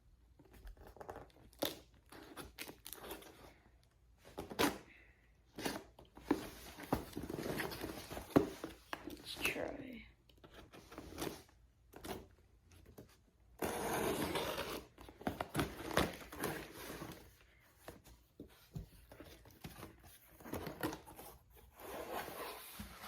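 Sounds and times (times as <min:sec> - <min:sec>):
cardboard box being opened: 0:05.5 - 0:09.3.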